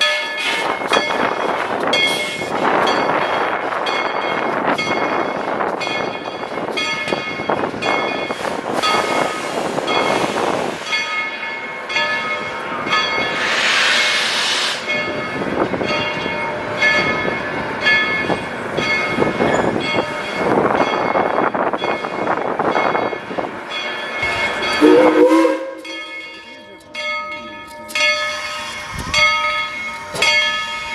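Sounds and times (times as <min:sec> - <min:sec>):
steam locomotive bell ringing: 0:00.0 - 0:30.9
steam hiss: 0:08.3 - 0:11.1, 0:13.1 - 0:15.3.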